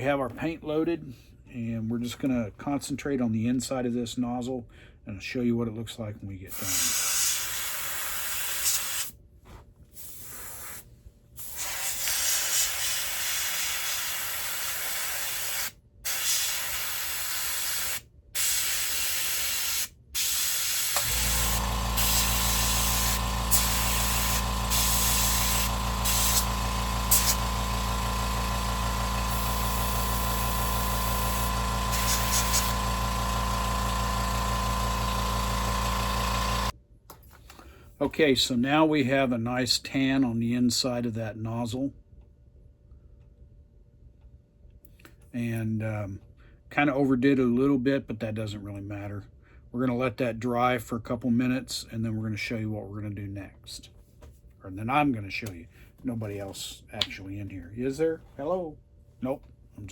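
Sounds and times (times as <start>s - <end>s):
air compressor humming: 6.6s - 9.1s, 11.4s - 36.7s
airbrush spraying hiss: 6.6s - 9.1s, 11.4s - 33.0s.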